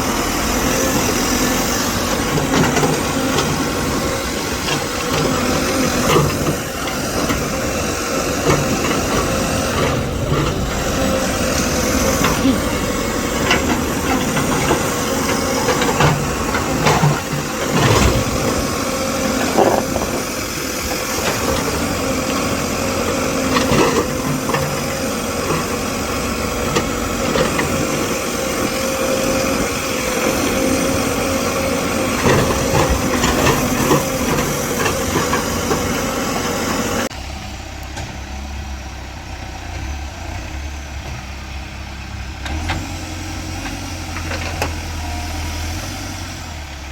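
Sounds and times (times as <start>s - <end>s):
tractor diesel engine running: 0.0s - 46.9s
knocks and clanks: 8.4s - 22.2s.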